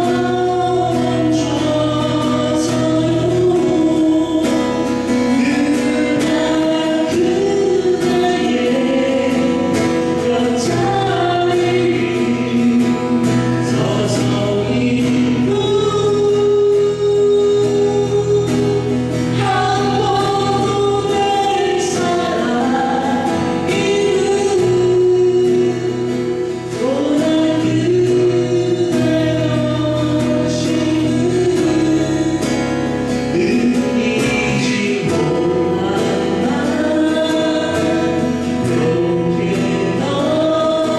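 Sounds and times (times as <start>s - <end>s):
group singing in harmony: 0.0s - 40.9s.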